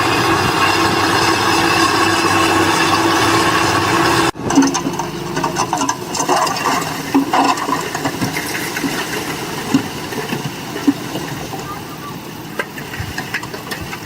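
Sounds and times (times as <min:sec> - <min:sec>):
machinery clattering on stone: 0:04.3 - 0:11.7, 0:12.4 - 0:14.0.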